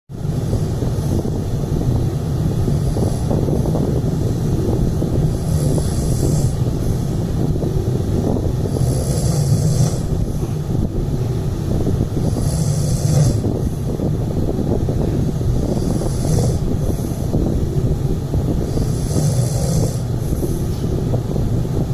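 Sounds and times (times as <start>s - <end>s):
man snoring: 0.2s - 3.8s, 5.3s - 6.7s, 8.7s - 10.1s, 12.2s - 13.8s, 15.6s - 17.3s, 18.6s - 20.6s.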